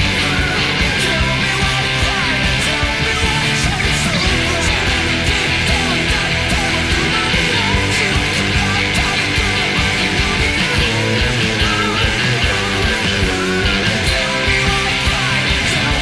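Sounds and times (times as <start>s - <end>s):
distorted electric guitar: 0.0s - 16.0s
rock band with drums: 0.0s - 16.0s.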